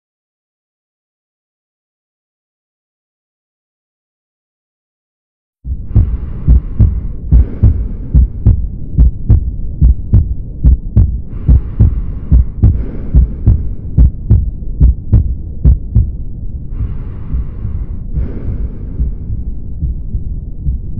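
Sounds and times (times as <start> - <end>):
heartbeat through stethoscope: 5.7 - 20.9
steady low hum: 5.7 - 20.9.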